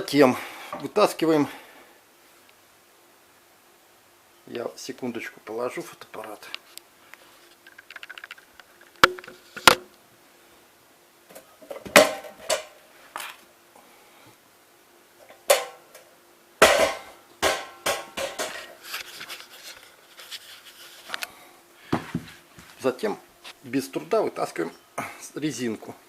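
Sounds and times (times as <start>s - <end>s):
metal parts knocking and clattering: 7.6s - 9.3s.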